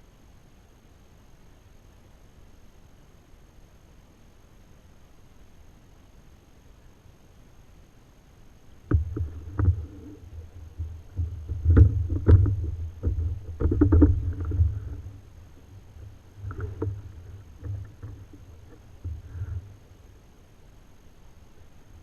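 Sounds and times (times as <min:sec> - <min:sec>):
knocks on plastic kayak hull: 0:08.9 - 0:19.7.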